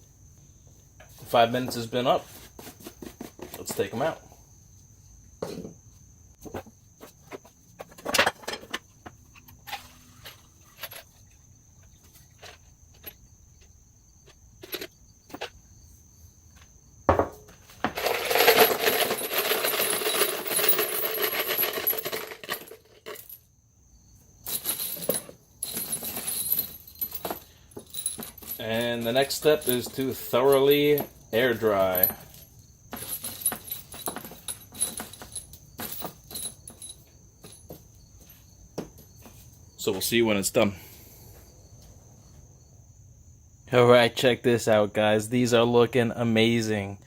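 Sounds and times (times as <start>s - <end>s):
metal nuts and bolts clinking: 7.8s - 13.7s, 14.6s - 15.5s, 17.2s - 23.5s, 24.3s - 38.0s.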